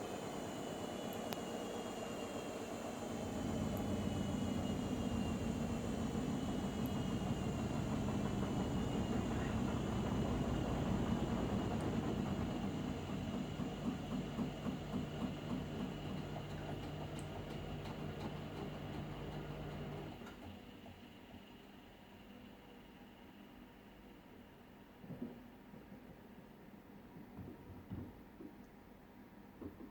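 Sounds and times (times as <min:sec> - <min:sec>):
appliance motor whine winding down: 0:00.0 - 0:20.2.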